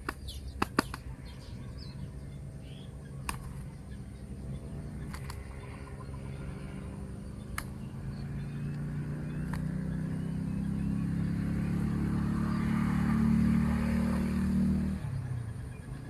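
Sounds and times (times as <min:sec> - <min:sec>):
sharp clicks: 0:00.0 - 0:01.1, 0:03.2 - 0:03.7, 0:05.0 - 0:05.5, 0:07.5 - 0:07.9, 0:08.7 - 0:09.7
vehicle engine approaching: 0:00.0 - 0:16.0.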